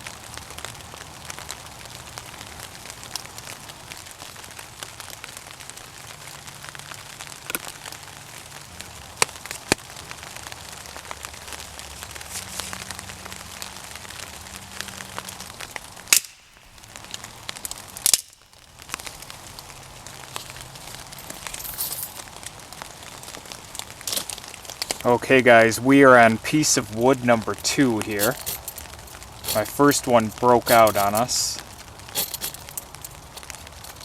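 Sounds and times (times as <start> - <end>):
cord wrapping rustle: 6.1 - 16.0, 16.8 - 34.0.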